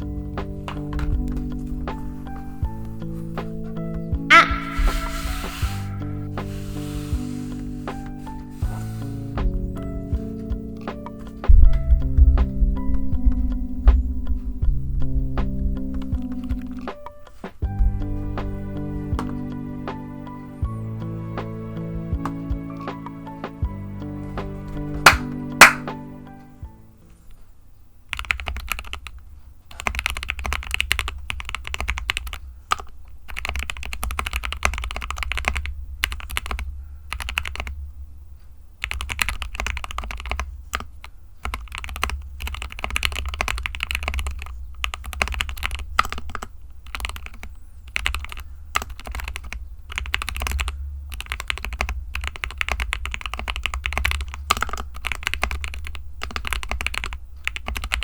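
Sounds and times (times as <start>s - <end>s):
mechanical keyboard typing: 28.1s - 37.7s, 38.8s - 58.0s.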